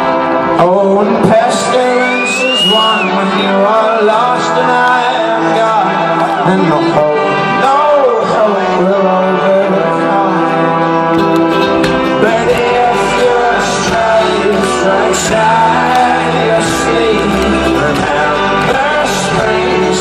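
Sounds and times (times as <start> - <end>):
banjo: 4.4 - 20.0
strummed acoustic guitar: 6.2 - 20.0.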